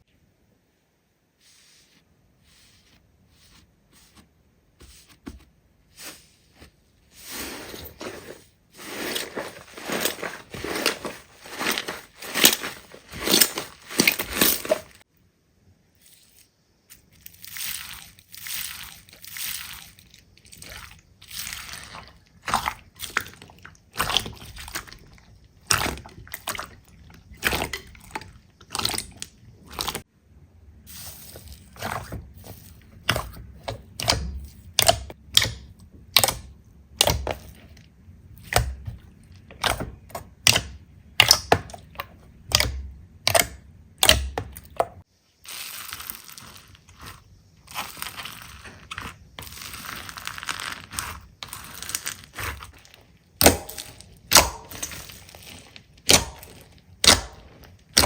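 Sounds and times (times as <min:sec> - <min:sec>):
slime squishing with wet pops: 0:38.4 - 0:58.0.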